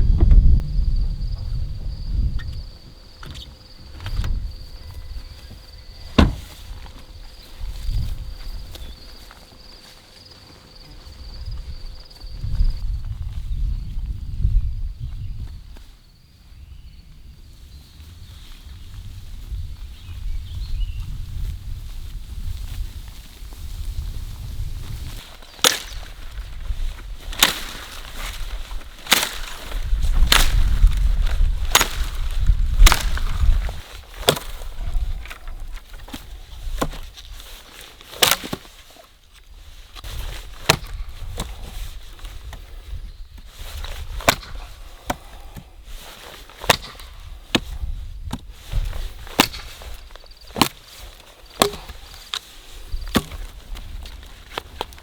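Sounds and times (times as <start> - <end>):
low rumble: 0.0 - 2.4
wood being chopped: 6.2 - 6.5, 25.6 - 26.2, 27.3 - 27.8, 29.1 - 29.6, 30.2 - 35.4, 36.0 - 37.1, 38.1 - 38.7, 40.6 - 41.6, 44.0 - 45.7, 46.6 - 48.5, 49.2 - 55.0.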